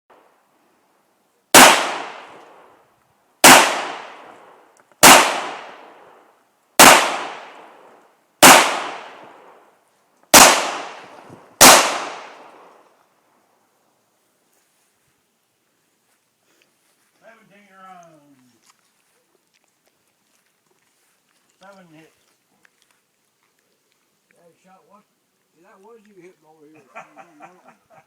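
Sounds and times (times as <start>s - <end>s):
gunshots: 1.5s - 2.7s, 3.4s - 6.0s, 6.8s - 7.8s, 8.4s - 9.6s, 10.3s - 12.7s.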